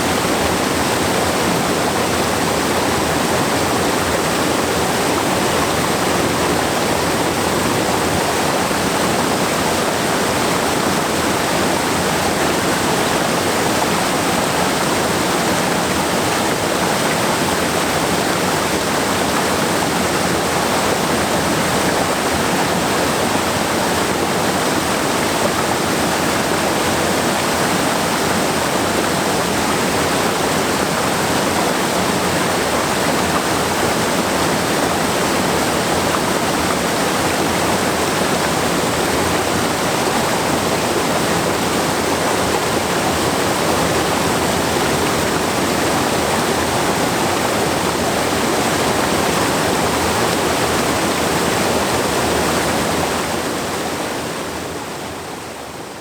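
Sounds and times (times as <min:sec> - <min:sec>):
waterfall roaring: 0:00.0 - 0:56.0.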